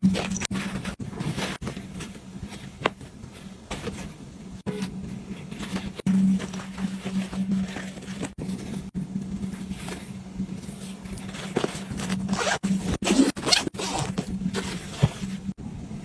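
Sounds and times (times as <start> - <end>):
zipper being pulled: 12.3 - 15.2.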